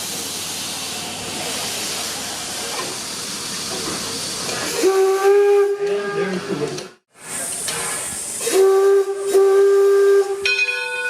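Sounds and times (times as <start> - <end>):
steam hissing from locomotive: 0.0 - 5.8, 7.1 - 10.5
steam whistle blowing: 4.7 - 6.4, 8.4 - 11.0.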